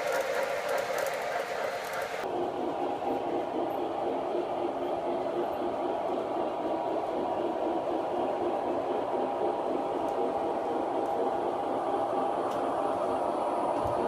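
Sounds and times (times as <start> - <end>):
model train running on track: 0.0 - 14.0.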